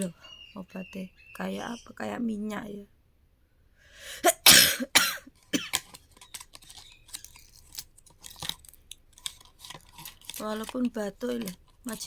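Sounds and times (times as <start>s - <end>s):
woman coughing: 4.2s - 5.8s.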